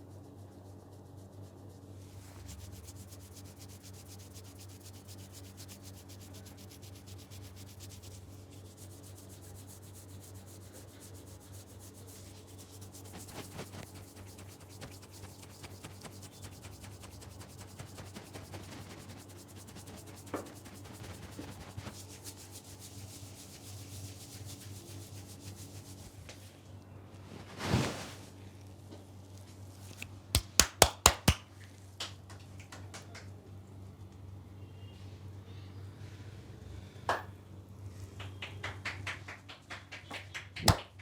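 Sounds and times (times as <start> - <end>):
hands rubbing scalp and hair: 0.8 - 26.5, 29.8 - 31.4
sharp snaps: 29.9 - 32.1, 38.2 - 41.0.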